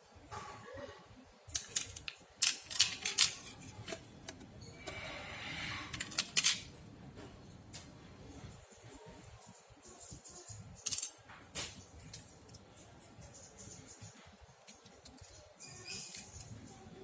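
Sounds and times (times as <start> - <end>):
small parts and tools clicking: 1.5 - 6.8, 10.5 - 17.0
scraping: 1.6 - 6.6.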